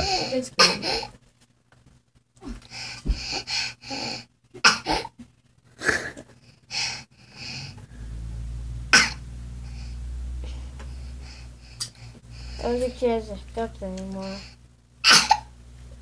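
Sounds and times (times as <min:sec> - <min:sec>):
girl coughing and hiccuping: 0:00.0 - 0:01.1, 0:04.6 - 0:05.2, 0:09.0 - 0:09.2, 0:15.0 - 0:15.5.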